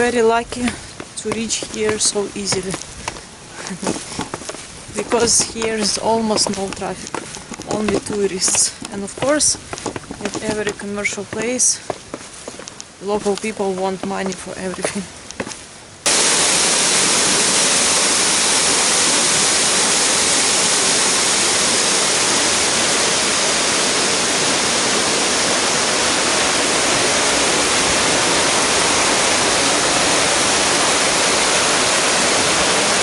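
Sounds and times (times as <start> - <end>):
waterfall rushing: 16.0 - 33.0.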